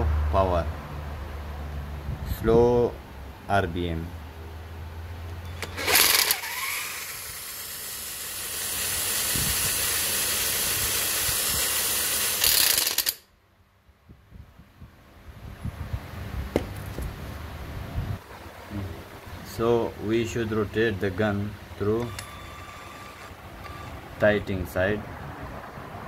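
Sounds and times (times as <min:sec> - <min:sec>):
power gun whirring: 0:05.4 - 0:13.3, 0:21.8 - 0:24.1.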